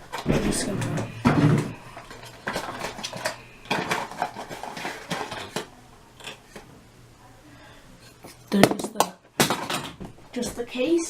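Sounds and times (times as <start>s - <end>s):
plastic packaging clicks and rattles: 0.1s - 6.4s.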